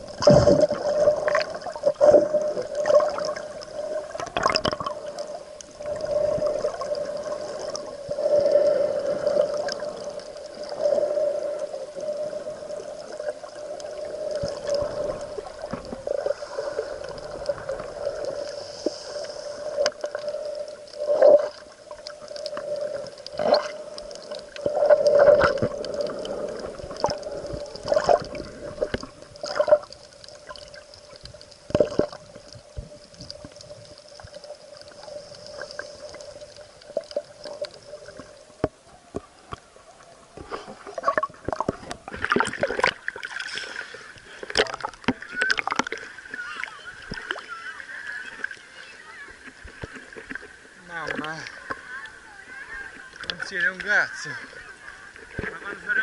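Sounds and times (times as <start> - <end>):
water gurgling and sloshing: 0.0 - 56.0
splashes or knocks: 40.4 - 43.5.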